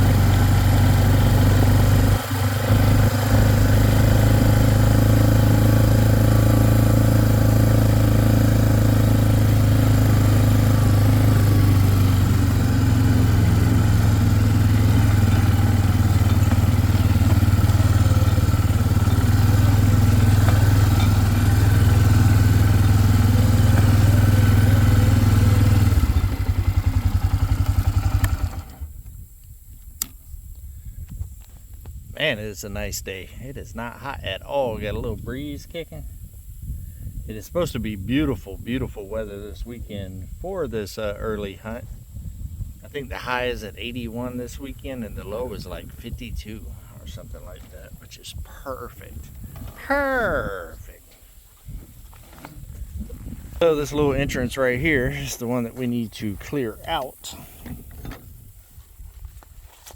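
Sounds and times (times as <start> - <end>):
small engine running: 0.0 - 28.9.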